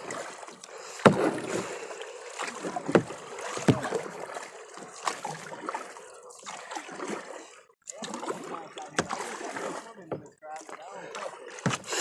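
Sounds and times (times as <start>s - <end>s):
kayak paddle splashing: 0.0s - 12.0s
steady water noise: 0.0s - 12.0s
paddle knocks: 0.9s - 1.8s, 2.4s - 4.4s, 8.3s - 10.7s, 11.6s - 12.0s.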